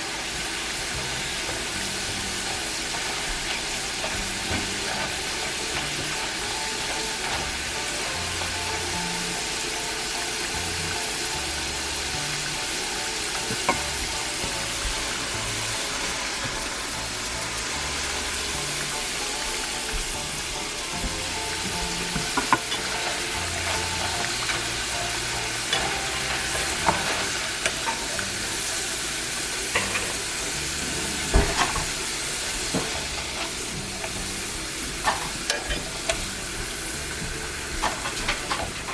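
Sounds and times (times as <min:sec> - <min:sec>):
fries sizzling in oil: 0:00.0 - 0:38.9.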